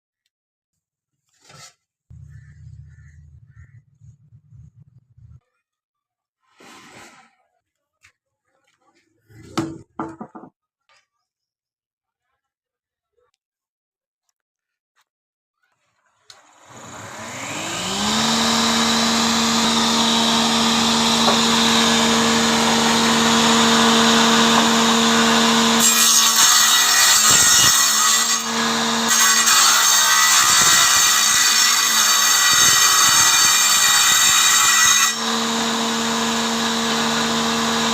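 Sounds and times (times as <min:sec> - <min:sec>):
power saw whining: 0:16.2 - 0:37.9
saw blade rasping through wood: 0:16.7 - 0:37.9.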